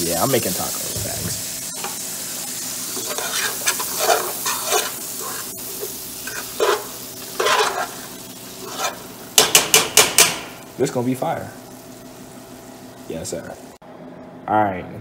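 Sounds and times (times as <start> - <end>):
meat and peppers sizzling in a pan: 0.0 - 13.8
utensil scraping a pan: 2.9 - 9.1.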